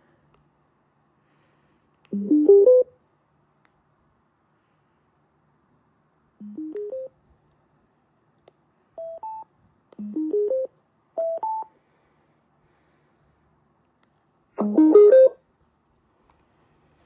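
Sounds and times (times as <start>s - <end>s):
electronic startup beeps: 2.2s - 2.9s, 6.4s - 7.1s, 10.0s - 11.7s, 14.6s - 15.4s
click: 3.6s - 3.8s.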